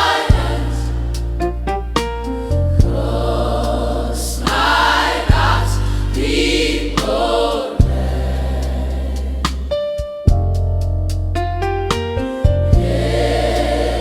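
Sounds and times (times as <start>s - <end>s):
choir singing: 0.0s - 1.4s, 2.8s - 9.7s, 12.8s - 14.0s.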